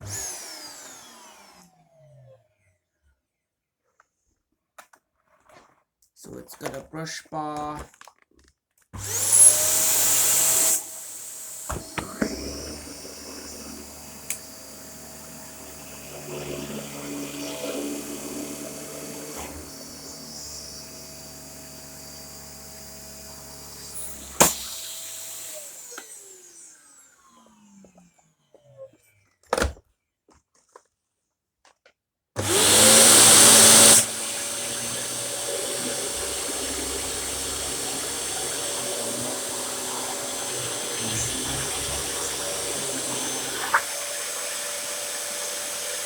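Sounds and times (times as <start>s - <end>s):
vacuum cleaner motor whine: 0.0s - 2.6s, 9.0s - 29.2s, 32.4s - 46.0s.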